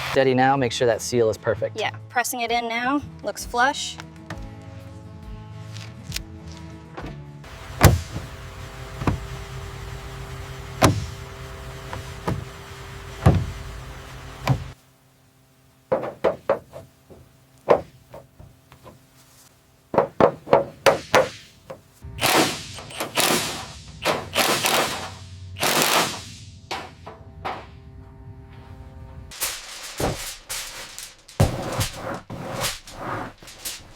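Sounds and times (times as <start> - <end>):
sharp knocks: 7.5 - 9.6, 10.7 - 14.8, 15.9 - 18.3, 19.9 - 22.5
steady low hum: 7.5 - 20.7, 21.5 - 33.9
short noisy bursts: 22.2 - 26.5.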